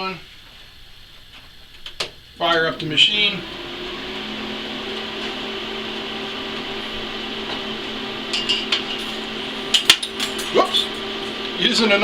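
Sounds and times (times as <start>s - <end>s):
welder fan humming: 2.4s - 12.0s.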